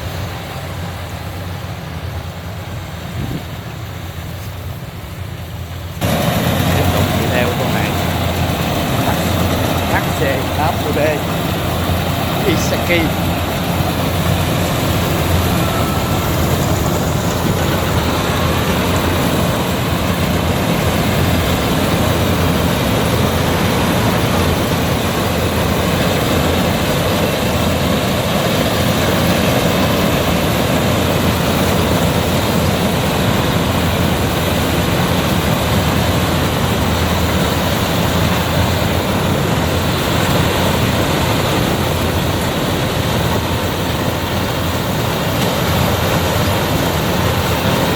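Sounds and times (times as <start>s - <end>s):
combine harvester droning: 0.0s - 47.9s.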